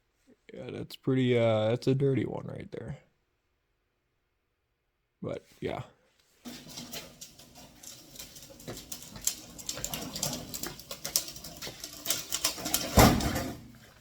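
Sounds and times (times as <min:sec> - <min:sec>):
metal parts and tools clicking: 0:06.5 - 0:14.0.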